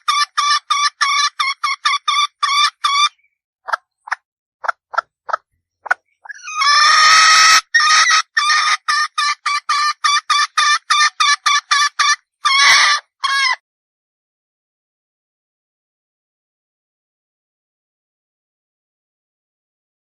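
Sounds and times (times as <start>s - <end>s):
hen squawk: 0.0s - 4.2s, 5.3s - 13.6s
hen clucking and cackling: 0.0s - 13.6s.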